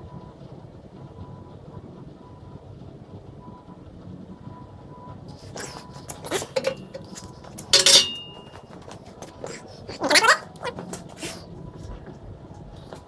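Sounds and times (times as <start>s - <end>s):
metallic clank ringing: 5.6s - 8.7s
clicks and knocks: 6.1s - 9.0s.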